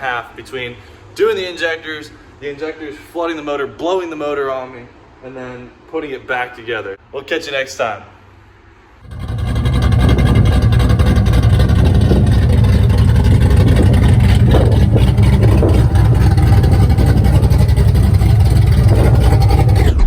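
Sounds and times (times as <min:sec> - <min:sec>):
car engine rumbling: 0:09.0 - 0:20.0.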